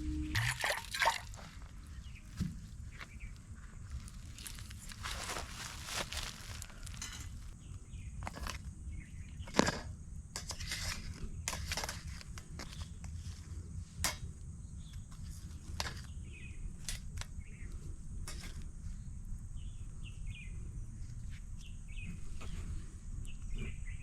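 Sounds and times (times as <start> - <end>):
low rumble: 0.0 - 0.4.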